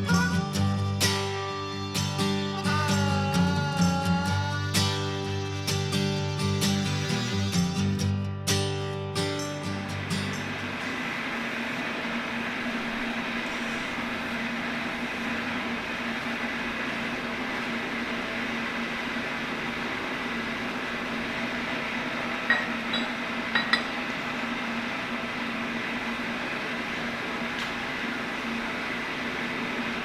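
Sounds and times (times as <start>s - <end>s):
electric motor hum: 0.0s - 8.1s.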